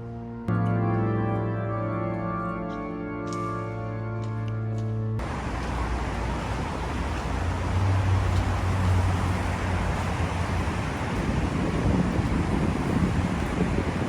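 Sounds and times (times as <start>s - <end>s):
low engine rumble: 5.2s - 14.0s
wind-like noise: 5.2s - 14.0s.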